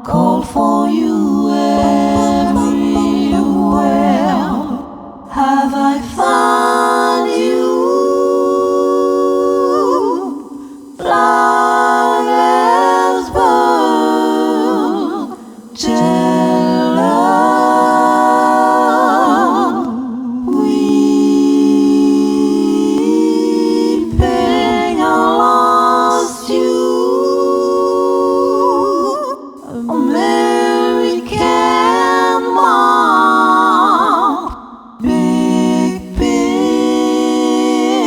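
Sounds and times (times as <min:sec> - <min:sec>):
woman singing a cappella harmonies: 0:00.0 - 0:38.0
singer breathing: 0:10.4 - 0:11.0.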